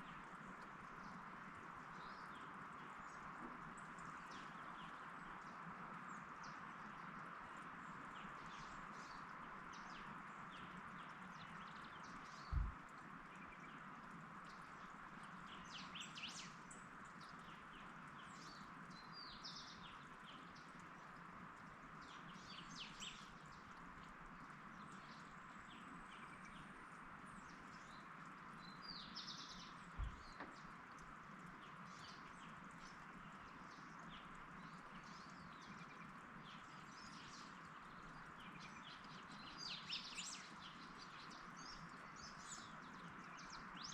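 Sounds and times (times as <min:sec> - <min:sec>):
small birds chirping: 0:01.0 - 0:43.9
short low thumps: 0:12.5 - 0:12.8, 0:30.0 - 0:30.3.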